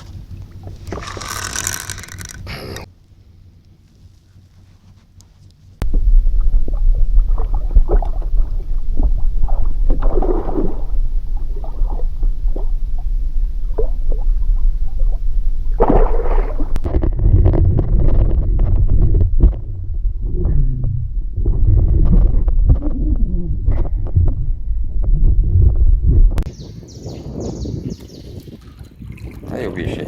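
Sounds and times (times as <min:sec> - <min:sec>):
heavy low rumble on microphone: 0:00.0 - 0:03.6, 0:05.8 - 0:30.0
fish thrashing and splashing in water: 0:05.9 - 0:17.2.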